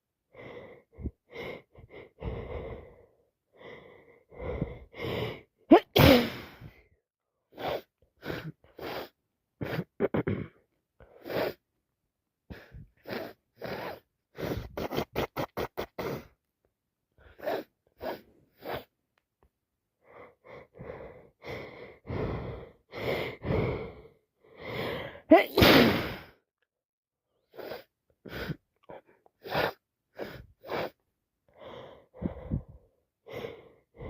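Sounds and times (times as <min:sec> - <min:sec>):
woman sneezing: 0:05.7 - 0:06.7, 0:25.3 - 0:26.3.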